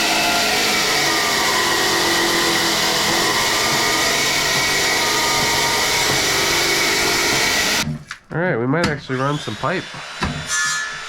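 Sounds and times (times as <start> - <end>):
power tool motor running: 0.0 - 7.8.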